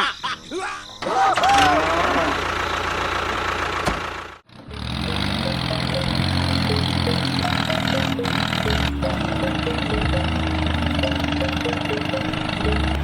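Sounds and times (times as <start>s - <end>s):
small motor running: 4.7s - 13.0s.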